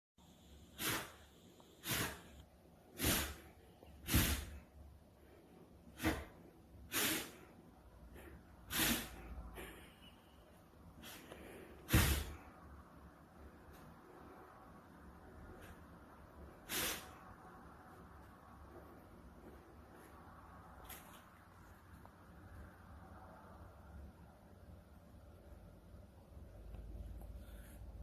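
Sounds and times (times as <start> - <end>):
dog sneezing: 0.7 - 4.7, 5.9 - 7.6, 8.2 - 9.9, 11.0 - 12.5, 16.6 - 17.3.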